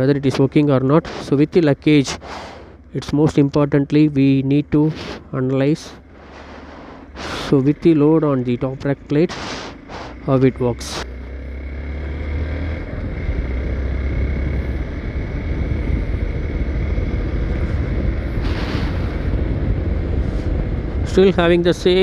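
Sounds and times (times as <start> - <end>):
motorcycle engine running: 0.0 - 22.0
wind rumbling on microphone: 12.8 - 22.0.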